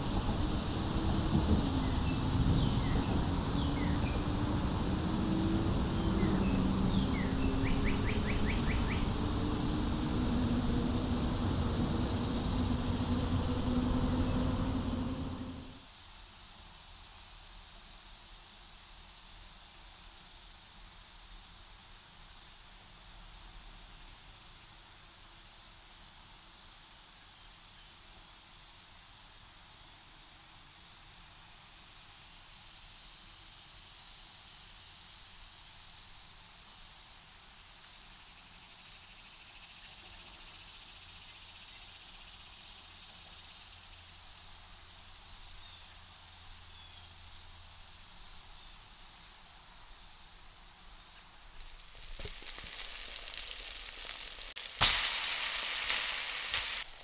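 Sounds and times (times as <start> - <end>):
crickets chirping: 0.0 - 15.8, 51.6 - 57.0
low steady hum: 0.0 - 15.8.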